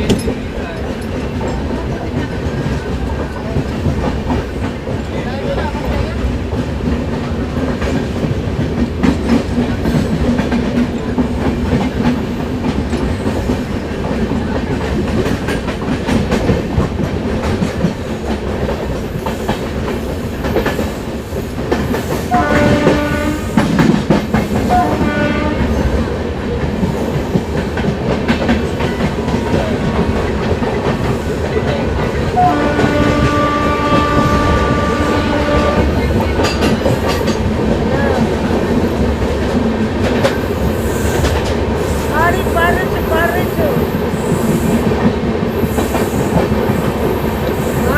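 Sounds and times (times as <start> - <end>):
train rumble and wheel clatter: 0.0 - 47.9
locomotive horn blasts: 22.3 - 23.6, 24.7 - 25.7, 32.4 - 36.0.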